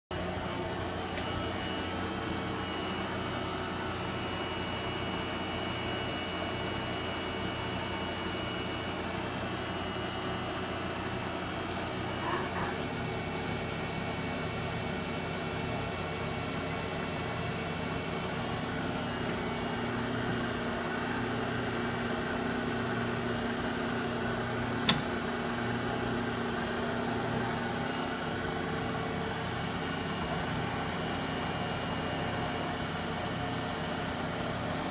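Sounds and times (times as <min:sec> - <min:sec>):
lathe humming with whining tones: 0:00.1 - 0:34.9.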